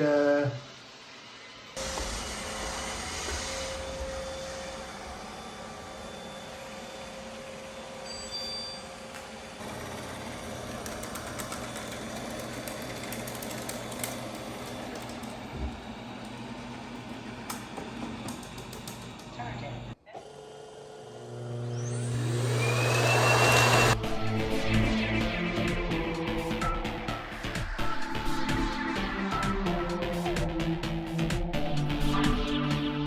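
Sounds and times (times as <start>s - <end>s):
robot vacuum motor: 0.0s - 19.4s, 20.1s - 25.1s
deeper hum: 1.8s - 8.0s, 21.2s - 33.0s.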